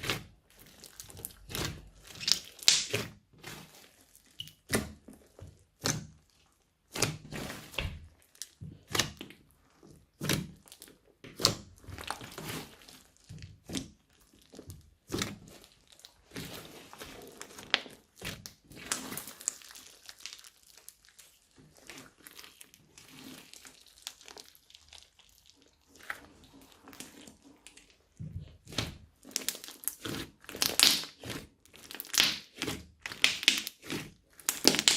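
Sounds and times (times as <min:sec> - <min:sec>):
slime being squished: 0:00.0 - 0:34.9.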